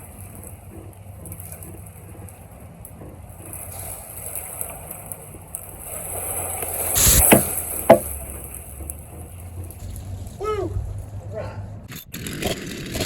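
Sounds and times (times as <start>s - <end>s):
low engine hum: 0.0s - 13.0s
trees crashing down: 2.4s - 13.0s
sharp knock: 7.0s - 8.2s.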